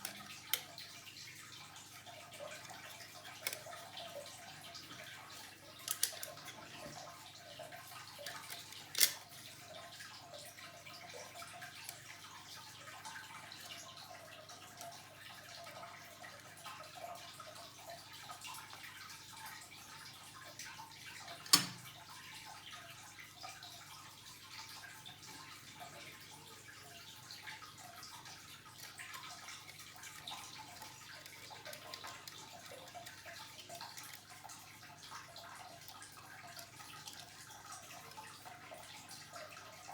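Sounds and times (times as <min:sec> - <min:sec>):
small clicks and taps of parts: 0:00.0 - 0:00.8, 0:03.4 - 0:03.7, 0:05.8 - 0:07.0, 0:08.2 - 0:09.3, 0:21.4 - 0:21.8, 0:28.8 - 0:34.4.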